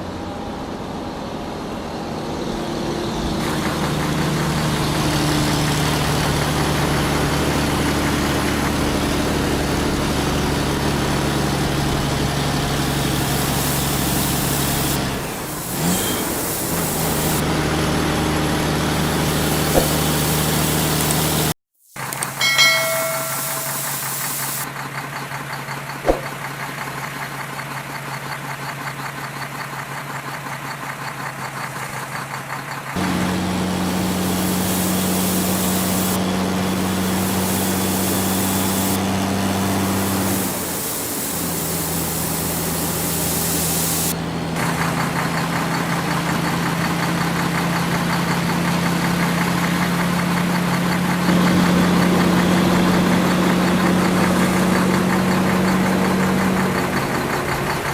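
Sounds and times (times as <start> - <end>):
diesel engine of heavy machinery: 0.0 - 21.5, 24.1 - 57.9
short click: 26.1 - 26.3.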